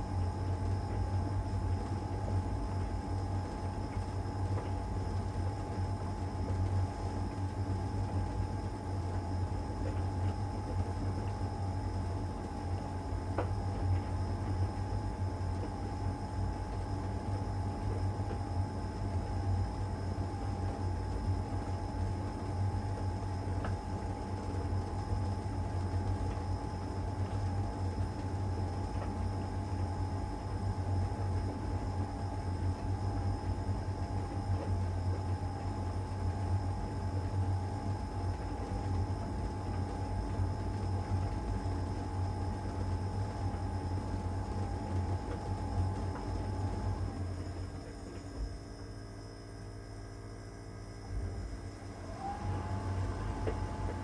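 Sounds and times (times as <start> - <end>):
faint taps from tumbling load: 12.5 - 15.0, 52.9 - 54.0
tumble dryer humming: 35.0 - 48.5, 51.0 - 54.0.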